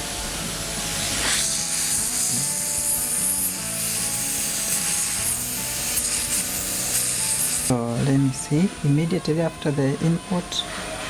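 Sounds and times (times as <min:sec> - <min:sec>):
steady hiss: 0:00.0 - 0:09.4.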